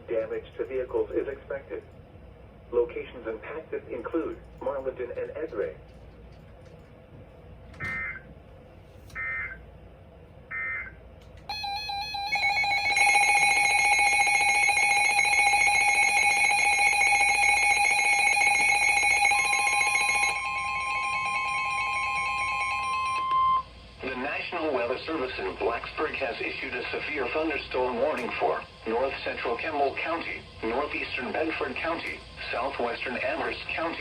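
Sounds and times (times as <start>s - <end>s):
warbling electronic alert tone: 10.5s - 10.9s, 11.5s - 23.6s.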